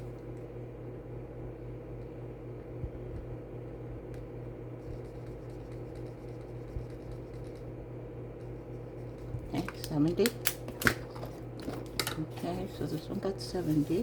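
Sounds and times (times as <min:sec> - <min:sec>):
low room hum: 0:00.0 - 0:14.0
pen scratching on paper: 0:04.8 - 0:07.6.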